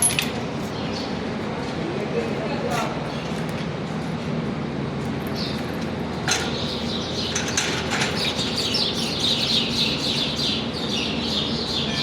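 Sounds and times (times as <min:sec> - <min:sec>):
small birds chirping: 0:06.5 - 0:12.0.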